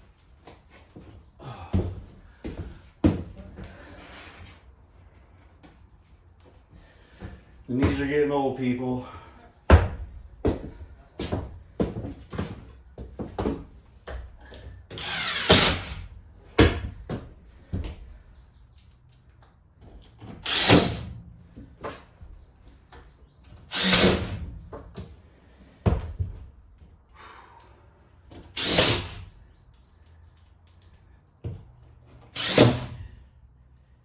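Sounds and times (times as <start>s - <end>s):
power drill driving screws: 14.9s - 16.1s, 20.4s - 21.2s, 23.7s - 24.5s, 28.5s - 29.4s, 32.2s - 33.1s.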